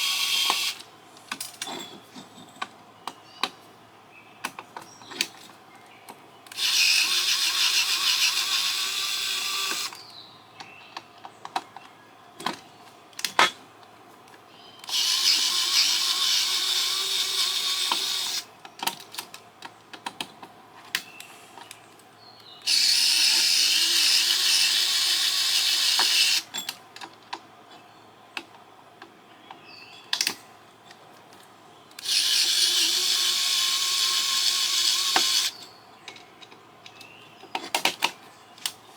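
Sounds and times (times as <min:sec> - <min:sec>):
cordless power driver running: 0:06.5 - 0:09.9, 0:14.9 - 0:18.5, 0:22.7 - 0:26.5, 0:32.0 - 0:35.6
clicks and clatter of parts: 0:13.2 - 0:13.6, 0:34.2 - 0:38.8.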